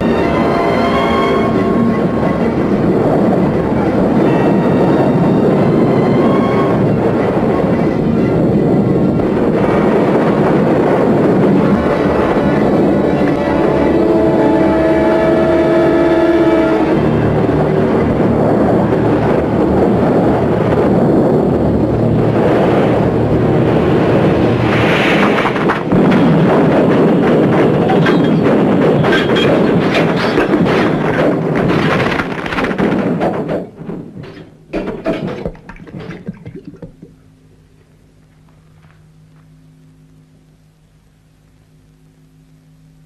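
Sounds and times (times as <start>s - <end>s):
train collision crash: 0.0s - 36.8s
rattling clatters: 25.1s - 36.7s.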